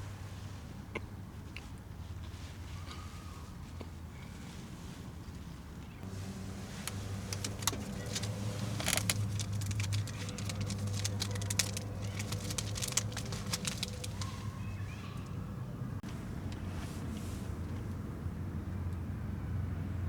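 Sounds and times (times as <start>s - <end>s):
small hard objects clattering: 6.9s - 14.5s.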